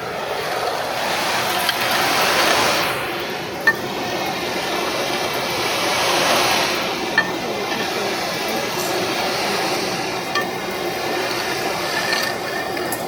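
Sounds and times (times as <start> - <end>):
industrial vacuum running: 0.0 - 13.0
metal chips clinking: 8.4 - 13.0.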